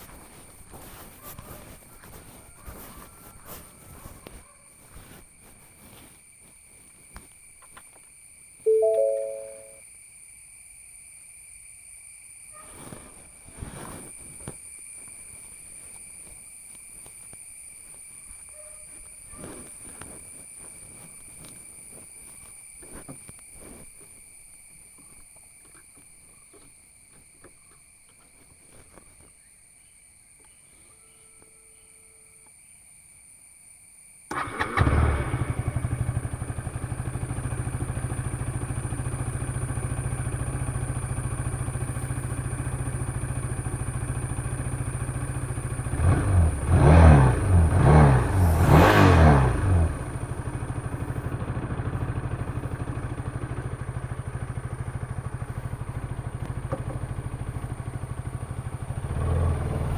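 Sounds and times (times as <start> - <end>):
throttle blips: 8.7 - 9.8
motorcycle engine starting and idling: 34.3 - 59.9.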